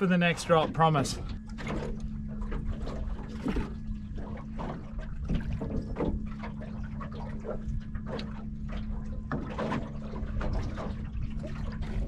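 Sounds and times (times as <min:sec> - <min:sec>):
constant low rumble: 0:00.0 - 0:12.0
steady low hum: 0:00.0 - 0:12.0
water slapping against boat hull: 0:00.0 - 0:12.0.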